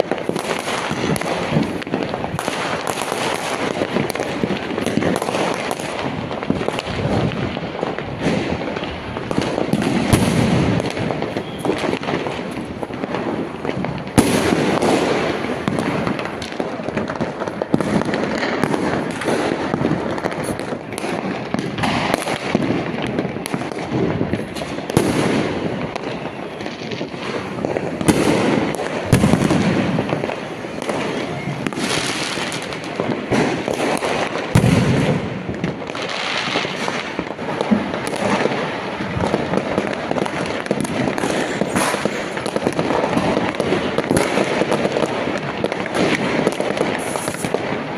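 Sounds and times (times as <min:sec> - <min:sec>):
firecrackers banging and crackling: 0:00.0 - 0:47.9.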